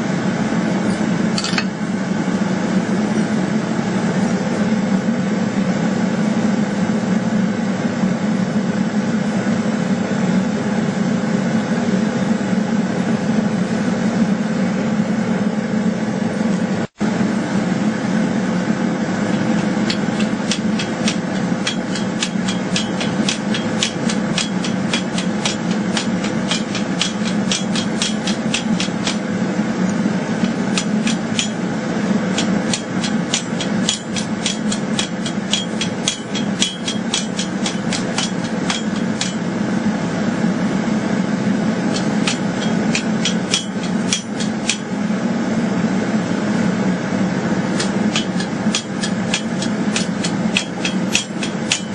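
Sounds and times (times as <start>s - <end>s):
steady loud drone: 0.0s - 51.9s
hammer striking steel: 0.9s - 1.8s, 19.3s - 29.4s, 30.3s - 39.5s, 41.9s - 45.0s, 47.7s - 51.9s.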